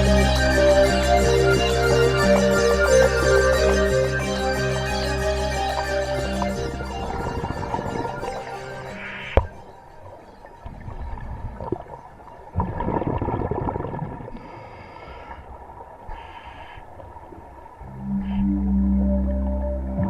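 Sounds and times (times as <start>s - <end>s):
low steady hum: 17.7s - 20.0s.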